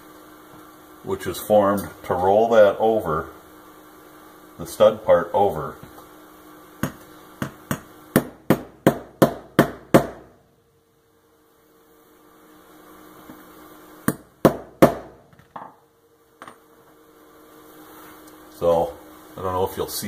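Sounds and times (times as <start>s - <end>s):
hammer striking punch on anvil: 6.8s - 10.3s, 14.1s - 15.7s.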